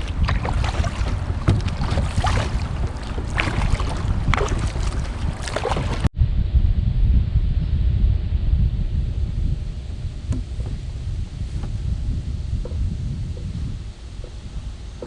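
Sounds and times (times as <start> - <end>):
paddle splashing into water: 0.0 - 6.1
wind buffeting microphone: 0.0 - 15.0.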